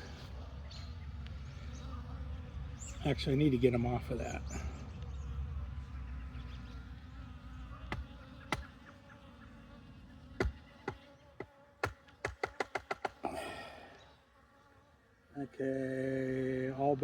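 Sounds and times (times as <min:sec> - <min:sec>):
honeybees buzzing: 0:00.0 - 0:17.0
sharp taps on hive entrance: 0:07.7 - 0:09.3, 0:10.3 - 0:13.3.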